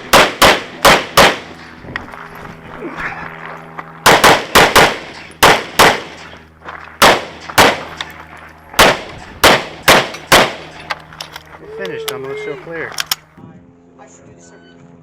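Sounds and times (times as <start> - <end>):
pistol shots: 0.0 - 1.6, 4.0 - 6.4, 7.0 - 8.1, 8.8 - 10.9.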